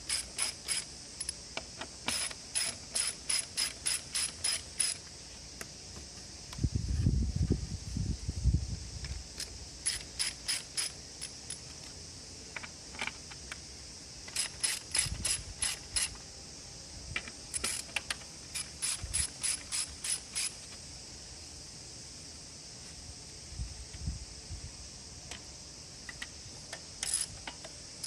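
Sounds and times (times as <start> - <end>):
ratchet wrench clicking: 0.0 - 1.4, 2.0 - 5.1, 9.4 - 11.9, 14.2 - 16.2, 17.2 - 20.6, 26.1 - 27.7.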